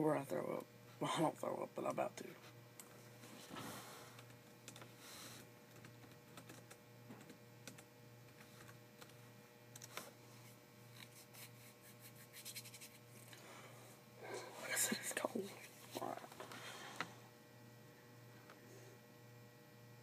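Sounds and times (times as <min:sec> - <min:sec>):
low steady hum: 0:00.0 - 0:20.0
computer keyboard typing: 0:04.6 - 0:04.9, 0:05.7 - 0:09.2, 0:09.8 - 0:10.0.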